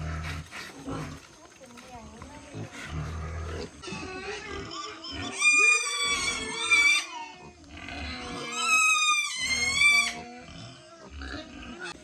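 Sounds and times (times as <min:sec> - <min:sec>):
pig squealing: 0:03.0 - 0:12.0.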